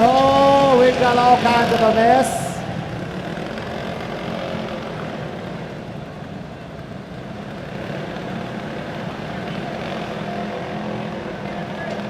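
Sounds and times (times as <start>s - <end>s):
go-kart engines droning: 0.0s - 12.0s.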